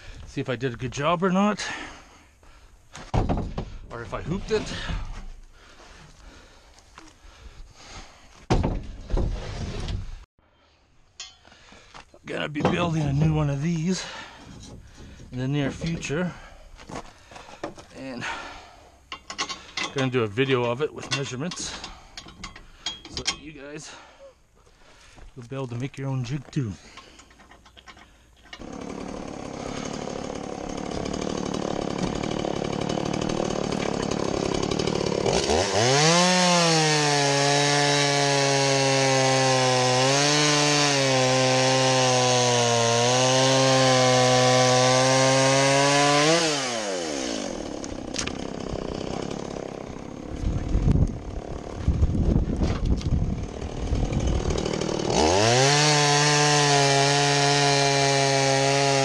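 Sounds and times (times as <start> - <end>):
chainsaw idling and revving: 28.6 - 59.0.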